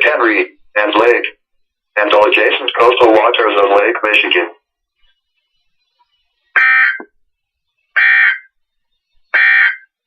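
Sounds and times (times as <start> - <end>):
digital data buzz bursts: 5.8 - 7.0.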